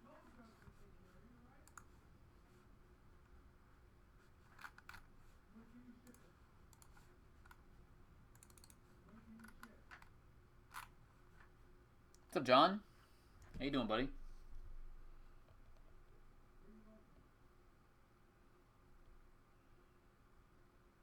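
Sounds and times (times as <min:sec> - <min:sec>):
faint clicks: 0:06.0 - 0:07.6, 0:08.3 - 0:08.8.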